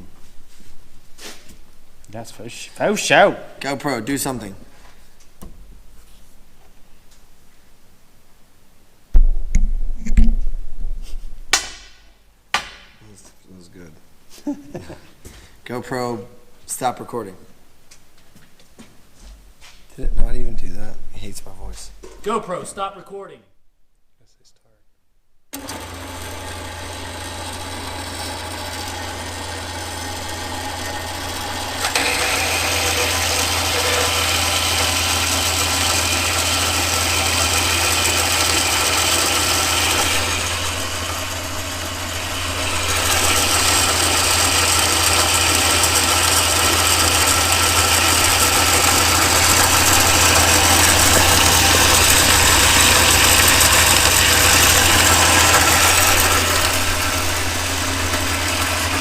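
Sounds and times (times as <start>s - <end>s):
power tool running: 25.6s - 59.0s.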